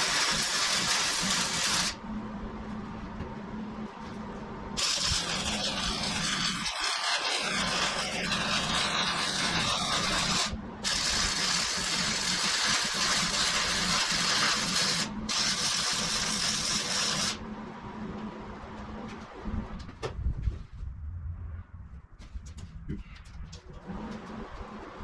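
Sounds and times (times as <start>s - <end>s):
welding arc crackling and hissing: 0.0s - 2.0s, 4.8s - 17.4s
welder low hum: 0.0s - 3.0s, 4.6s - 17.5s.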